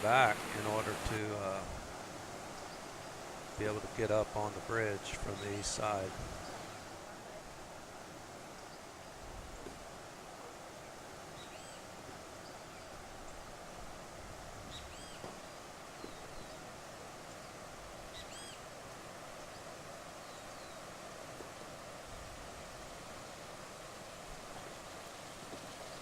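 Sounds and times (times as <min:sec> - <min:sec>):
steady rushing noise: 0:00.0 - 0:01.9
birds calling: 0:14.7 - 0:15.3, 0:17.3 - 0:18.7.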